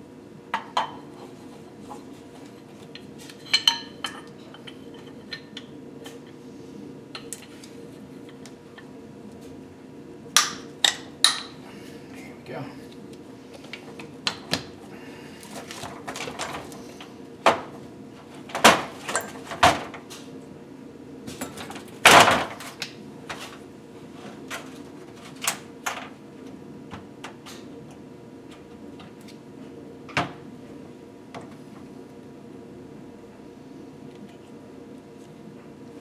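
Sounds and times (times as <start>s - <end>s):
steady low hum: 0.0s - 36.0s.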